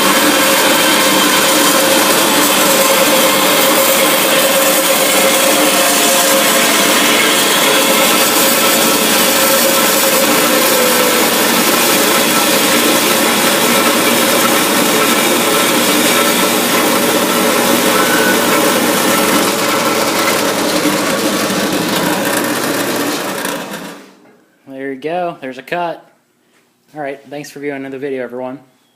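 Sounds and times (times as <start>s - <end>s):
saw blade grinding hiss: 0.0s - 20.8s
bandsaw motor humming: 0.0s - 24.2s.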